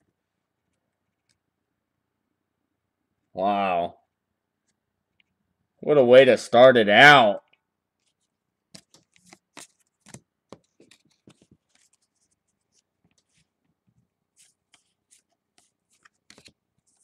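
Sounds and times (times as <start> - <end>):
trading cards rustling and clicking: 8.0 - 17.0.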